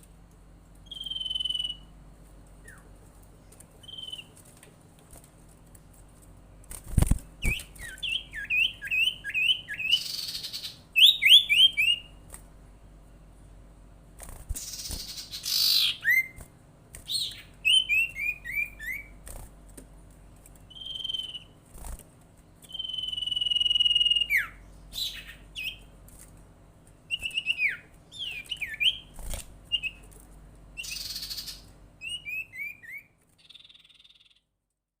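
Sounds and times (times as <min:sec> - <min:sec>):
bird chirping: 0:00.8 - 0:01.9, 0:03.7 - 0:04.4, 0:07.0 - 0:12.2, 0:14.6 - 0:16.4, 0:17.0 - 0:19.2, 0:20.6 - 0:21.6, 0:22.6 - 0:25.9, 0:27.1 - 0:30.1, 0:30.8 - 0:34.6
bird long held whistle: 0:00.9 - 0:01.8, 0:22.7 - 0:24.6
harsh bird rasps: 0:07.4 - 0:12.1, 0:14.6 - 0:16.4, 0:30.8 - 0:34.5.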